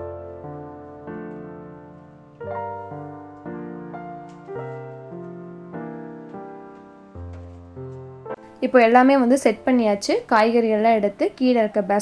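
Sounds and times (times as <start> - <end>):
keyboard playing slow gentle chords: 0.0 - 8.6.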